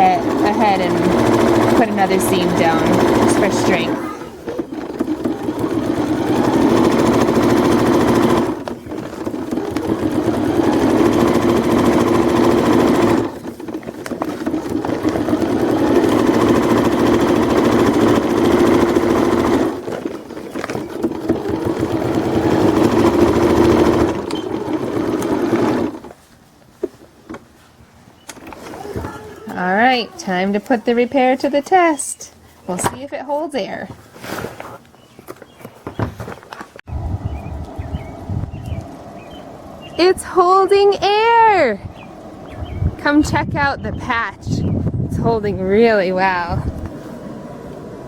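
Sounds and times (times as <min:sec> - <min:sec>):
sewing machine stitching: 0:00.0 - 0:26.2.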